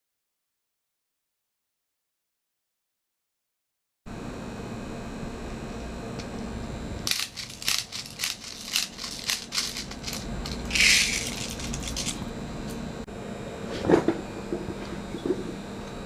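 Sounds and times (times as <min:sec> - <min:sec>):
rifle clicks and rattles: 0:07.1 - 0:12.2.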